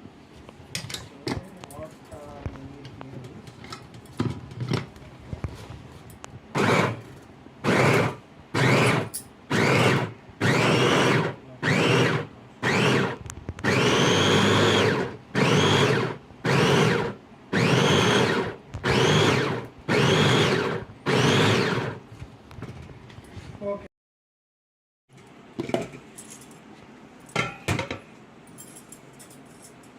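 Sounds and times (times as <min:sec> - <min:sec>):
chopper motor whining: 0:07.7 - 0:22.0.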